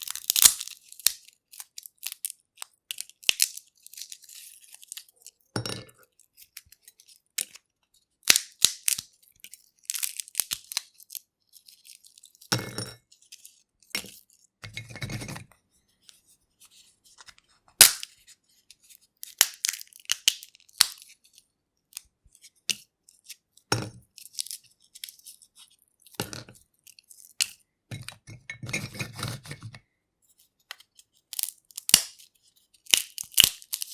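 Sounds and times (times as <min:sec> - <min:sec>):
peanut shells cracking: 0:00.0 - 0:05.4, 0:08.2 - 0:12.5, 0:17.8 - 0:18.1, 0:19.2 - 0:21.1, 0:30.7 - 0:32.2, 0:32.8 - 0:33.9.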